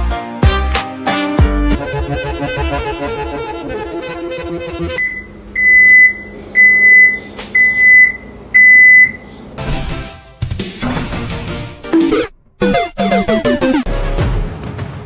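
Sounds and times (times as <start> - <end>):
background music: 0.0 - 5.0, 9.7 - 15.0
high electronic beeps: 12.0 - 14.0.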